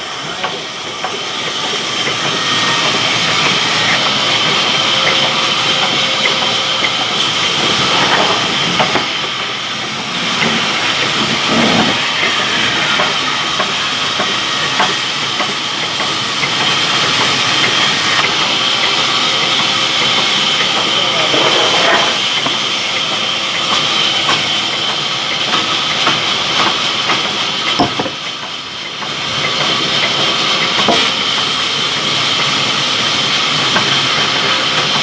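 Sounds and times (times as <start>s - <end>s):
saw blade cutting wood: 0.0s - 18.3s, 20.0s - 22.7s, 30.8s - 35.0s.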